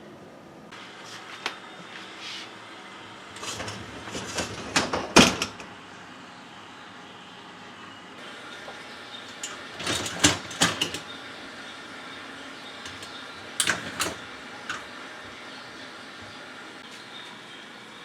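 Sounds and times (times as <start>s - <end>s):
dishwasher rack clicking and rattling: 9.2s - 11.2s, 12.8s - 15.0s.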